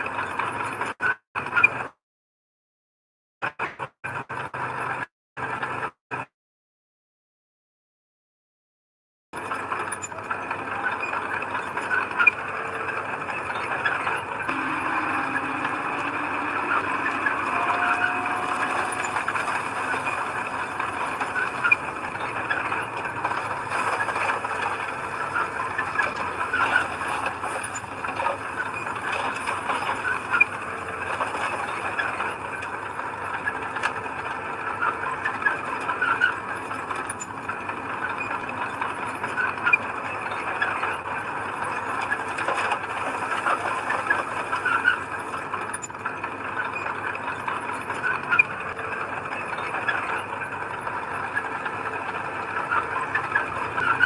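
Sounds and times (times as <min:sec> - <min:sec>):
squeaks: 0:09.4 - 0:34.1, 0:34.8 - 0:37.4, 0:41.7 - 0:54.0
bulldozer engine running: 0:09.4 - 0:54.0
metallic clatter and clanks: 0:09.4 - 0:54.0.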